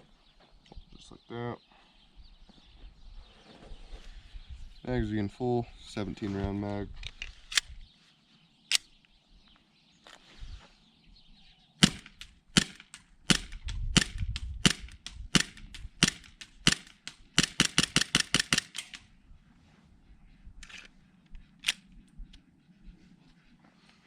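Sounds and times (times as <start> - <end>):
airsoft pistol shots: 11.8 - 19.0.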